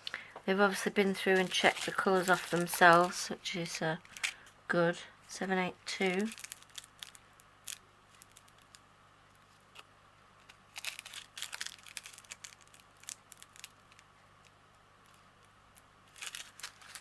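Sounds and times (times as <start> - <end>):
plastic bags crinkling: 0.0 - 4.5, 5.9 - 8.8, 10.4 - 14.0, 16.0 - 17.0.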